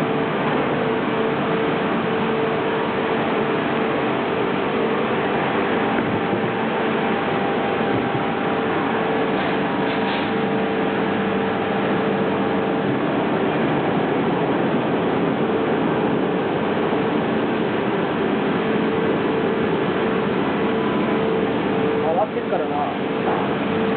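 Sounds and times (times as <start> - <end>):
lathe mechanical noise: 0.0 - 23.9
steady whine: 0.0 - 23.9.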